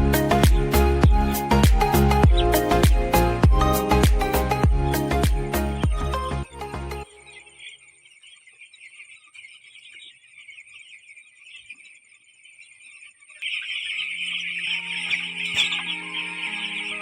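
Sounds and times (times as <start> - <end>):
chicks peeping: 0.0 - 6.2, 7.0 - 17.0
background music: 0.0 - 7.6, 14.0 - 17.0.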